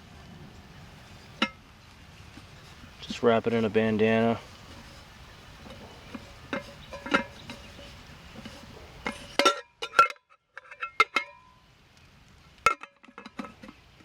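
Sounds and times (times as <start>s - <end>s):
metal pot clinking: 4.2s - 11.5s, 12.7s - 13.8s.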